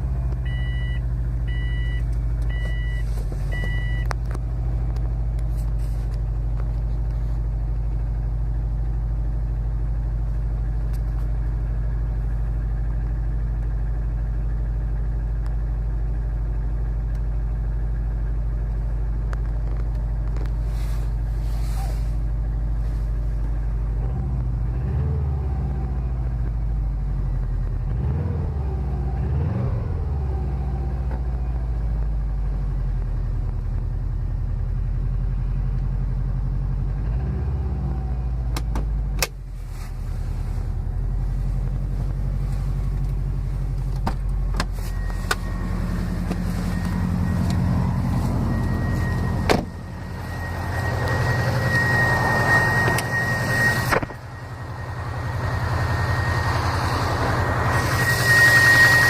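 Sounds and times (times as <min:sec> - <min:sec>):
car engine idling: 0:00.0 - 0:37.1, 0:37.8 - 0:59.0
thin high whine: 0:44.8 - 0:59.0.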